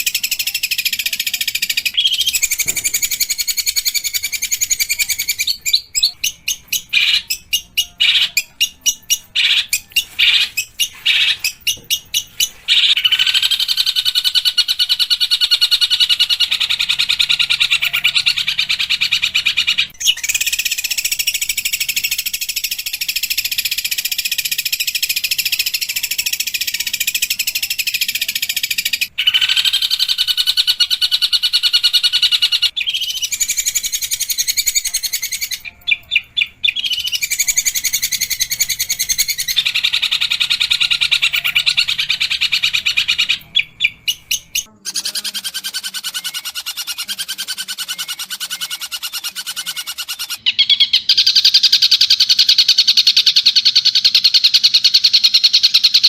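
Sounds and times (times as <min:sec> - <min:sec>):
bird rasping chatter song: 0:00.0 - 0:56.0.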